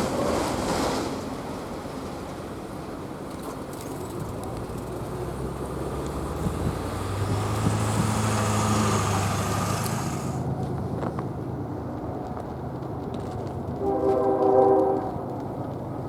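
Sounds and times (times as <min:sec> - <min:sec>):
vehicle engine passing: 0:04.0 - 0:10.5
hiss: 0:07.4 - 0:10.4.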